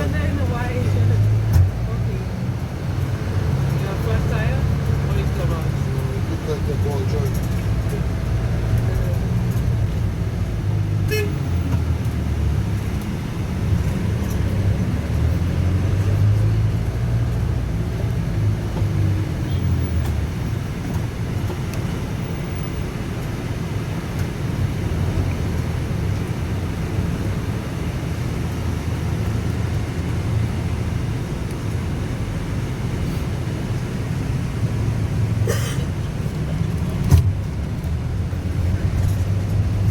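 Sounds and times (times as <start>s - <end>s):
road noise: 0.0s - 39.9s
vehicle engine rumble: 0.0s - 39.9s.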